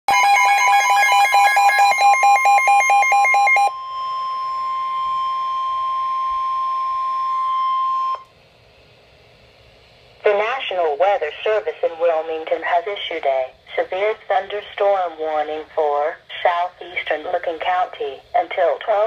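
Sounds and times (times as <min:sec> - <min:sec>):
rapidly pulsing electronic beep: 0:00.1 - 0:06.8
steady warning alarm tone: 0:00.1 - 0:08.2
radio static hiss: 0:10.2 - 0:19.0.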